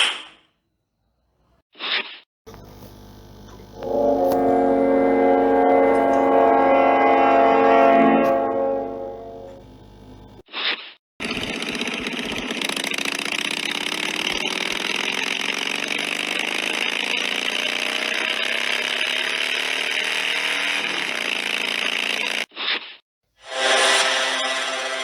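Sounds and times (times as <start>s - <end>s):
motor running with rising pitch: 2.6s - 10.1s, 11.3s - 22.3s.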